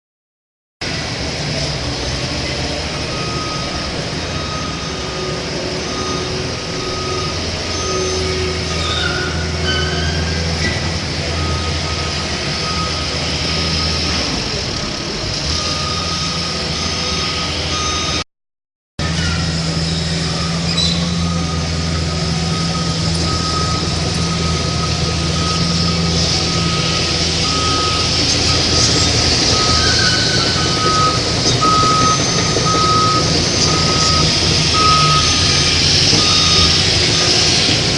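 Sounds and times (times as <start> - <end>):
reversing beeper: 2.9 - 10.6, 11.3 - 14.4, 15.4 - 18.2, 19.0 - 37.9.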